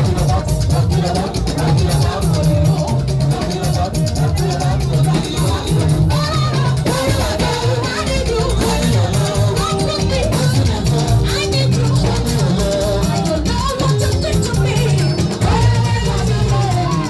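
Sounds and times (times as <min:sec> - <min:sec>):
live band playing dance song: 0:00.0 - 0:17.0
person singing: 0:00.0 - 0:17.0.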